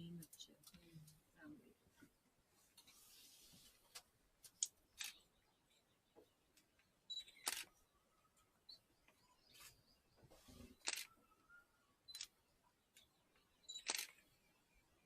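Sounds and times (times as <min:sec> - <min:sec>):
faint bird chirps: 0:04.5 - 0:15.0
camera shutter clicks: 0:07.4 - 0:07.7, 0:13.7 - 0:14.2.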